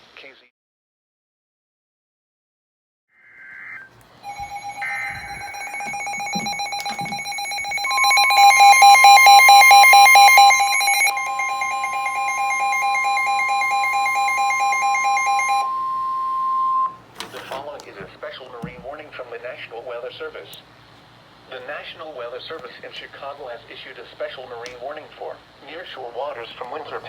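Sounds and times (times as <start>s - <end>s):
pulsing electronic alarm beeps: 3.3s - 17.0s
buzzy data bursts: 3.6s - 15.4s
steady alarm tone: 3.6s - 17.0s.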